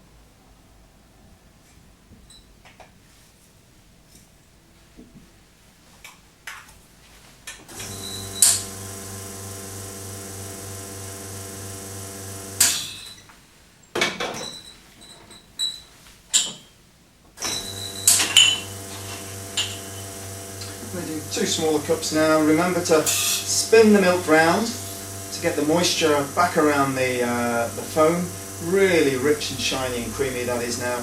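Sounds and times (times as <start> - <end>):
coffee grinder motor humming: 7.7 - 12.9, 17.4 - 31.0.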